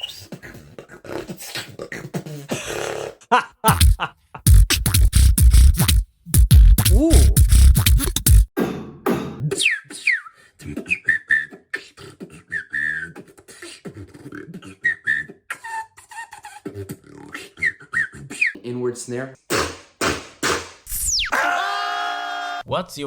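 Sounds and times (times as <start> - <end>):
whistle-like vocal glides: 0.0 - 0.2, 6.9 - 7.4, 9.5 - 18.6
heavy vocal bass: 3.7 - 5.8, 6.6 - 8.0
mouth clicks: 3.7 - 8.5, 19.5 - 21.3.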